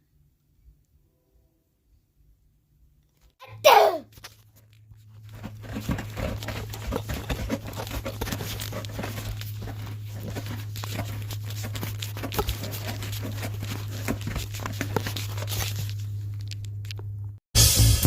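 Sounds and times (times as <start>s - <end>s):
constant low hum: 2.3s - 17.4s
animal rustling and pattering: 4.1s - 16.9s.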